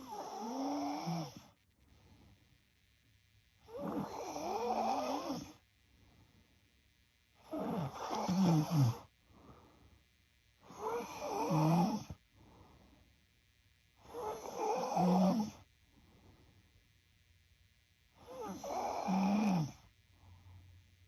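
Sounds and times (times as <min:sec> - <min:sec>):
woman snoring: 0:00.0 - 0:01.6, 0:03.6 - 0:05.6, 0:07.4 - 0:09.1, 0:10.6 - 0:12.2, 0:14.0 - 0:15.7, 0:18.2 - 0:19.9
faint breaths: 0:00.0 - 0:17.3, 0:18.1 - 0:21.0.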